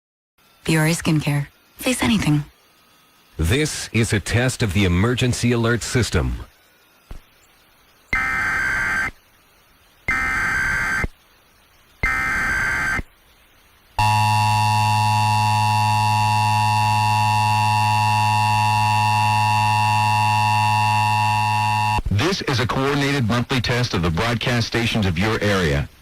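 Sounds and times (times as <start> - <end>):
warbling data bursts: 8.1 - 9.2, 10.0 - 11.2, 12.0 - 13.1, 14.0 - 23.1
two-tone attention signal: 14.0 - 22.0.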